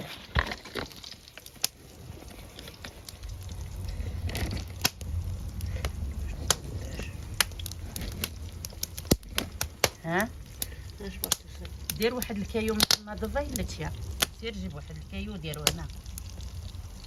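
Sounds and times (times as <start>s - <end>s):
wood fire crackling: 0.0s - 17.0s
low rumble: 1.9s - 17.0s
sharp pops: 7.4s - 13.1s.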